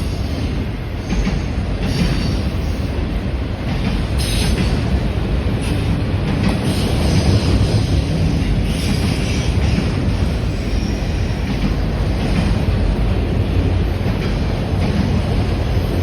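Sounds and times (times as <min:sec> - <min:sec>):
freight train wheels rumbling: 0:00.0 - 0:16.0
train hiss: 0:04.0 - 0:11.6.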